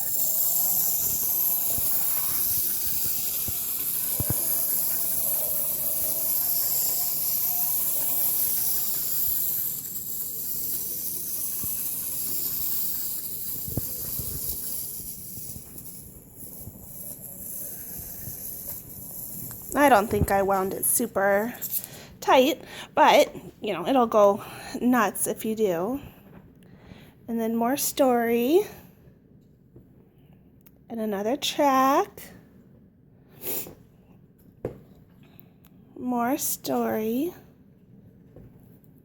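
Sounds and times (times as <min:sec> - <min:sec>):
clockwork toy train whirring: 0:00.0 - 0:21.9.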